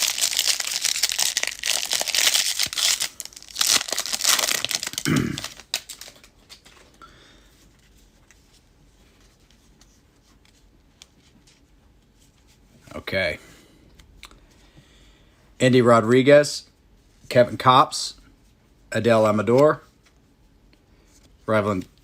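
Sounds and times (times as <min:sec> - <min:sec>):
wrapper crinkling and tearing: 0:00.0 - 0:06.8.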